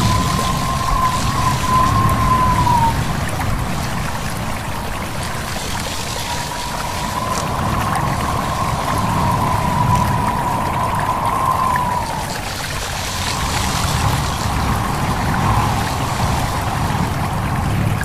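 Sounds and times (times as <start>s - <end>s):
high wind whistle: 0.0s - 18.0s
stream babbling: 0.0s - 18.0s.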